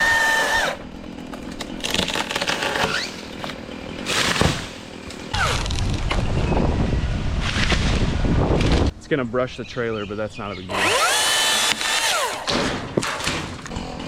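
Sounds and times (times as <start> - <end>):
electric chainsaw revving: 0.0 - 0.8, 10.7 - 12.5.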